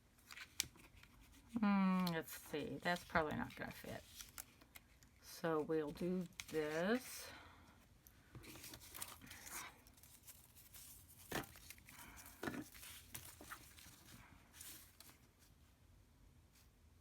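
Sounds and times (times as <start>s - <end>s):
paper rustling: 0.2s - 5.1s, 5.9s - 7.2s, 8.3s - 15.7s.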